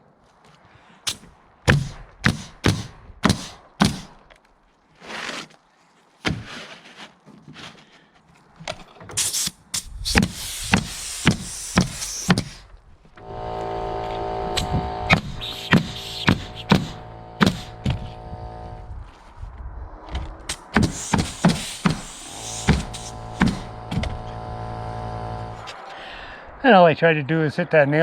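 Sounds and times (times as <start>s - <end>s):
nails knocked into shingles: 1.1s - 4.2s, 10.1s - 12.6s, 20.5s - 24.1s
short scraping hisses: 9.2s - 12.6s, 14.6s - 18.6s, 20.5s - 23.8s.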